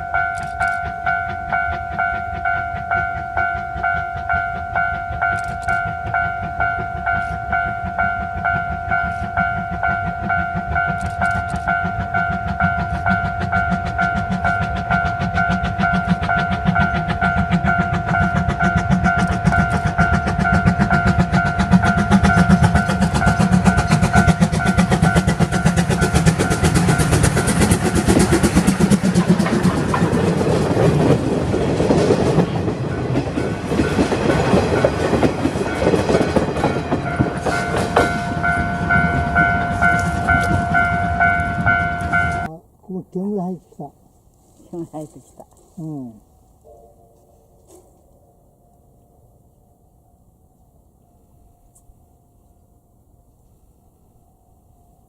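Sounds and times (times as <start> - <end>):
level-crossing alarm ringing: 0.0 - 29.1, 32.8 - 42.6
train rumble and wheel clatter: 0.0 - 46.7.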